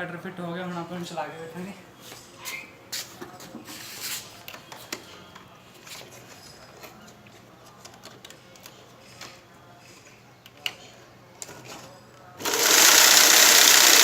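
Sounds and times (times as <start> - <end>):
electric motor whirring: 12.4 - 14.0.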